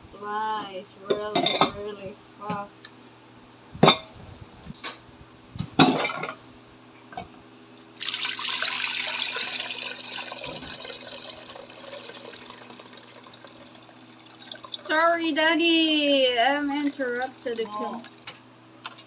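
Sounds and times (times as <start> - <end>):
running water rushing: 8.0 - 15.0.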